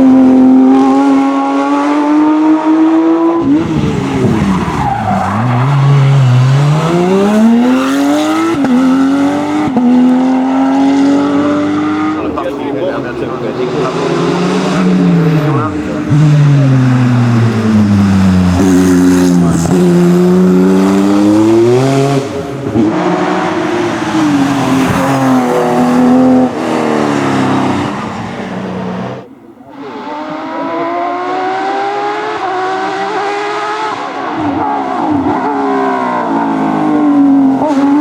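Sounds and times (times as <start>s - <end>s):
racing car engine at full throttle: 0.0s - 38.0s.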